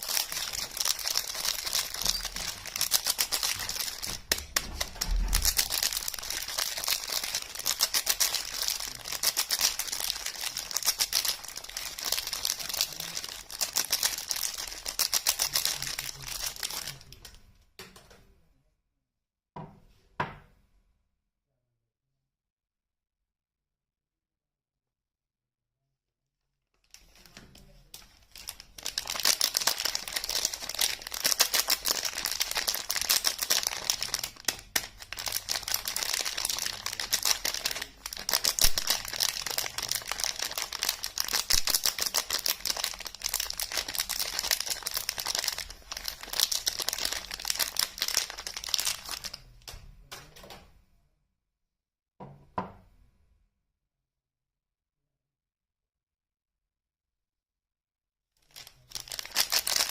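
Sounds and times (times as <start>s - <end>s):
wrapper rustle: 0.0s - 17.2s, 26.8s - 49.4s, 58.4s - 59.9s
wrapper crinkling and tearing: 0.0s - 17.3s, 26.8s - 49.5s, 58.4s - 59.9s.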